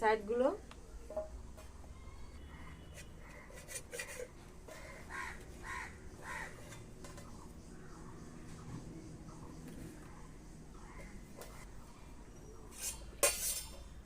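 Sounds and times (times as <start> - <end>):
bird harsh calls: 4.7 - 8.0.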